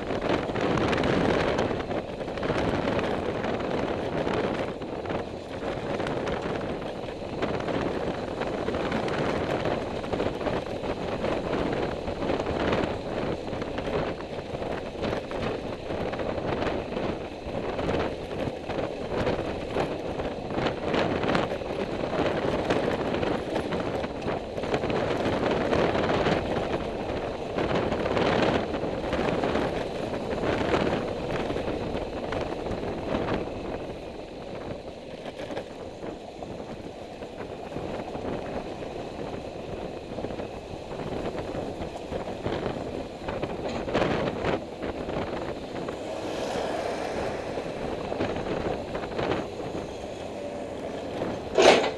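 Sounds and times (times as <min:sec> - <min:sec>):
road and wind noise: 0:00.0 - 0:51.9
vehicle knocks and rattles: 0:40.1 - 0:51.9.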